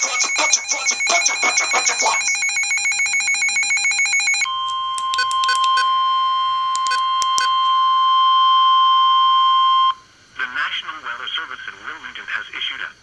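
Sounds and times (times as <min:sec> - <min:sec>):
pulsing ringing alert: 0:00.0 - 0:05.9
short beeps: 0:00.0 - 0:10.0
steady warning alarm tone: 0:00.0 - 0:10.0.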